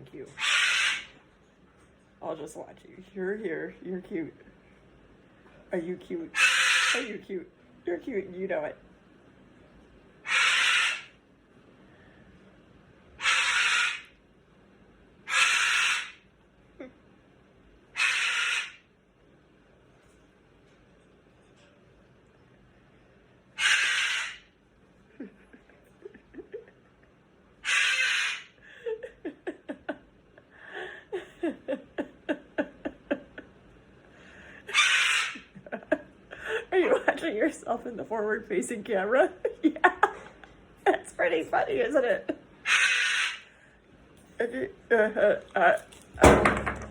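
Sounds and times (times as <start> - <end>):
cockatoo screeching: 0.4 - 1.2, 6.4 - 7.1, 10.2 - 11.2, 13.2 - 14.2, 15.3 - 16.2, 18.0 - 18.9, 23.6 - 24.5, 27.6 - 28.6, 34.7 - 35.5, 42.6 - 43.5
cockatoo hiss: 10.3 - 11.1, 13.2 - 14.1, 15.3 - 16.2, 18.0 - 18.8, 23.6 - 24.4.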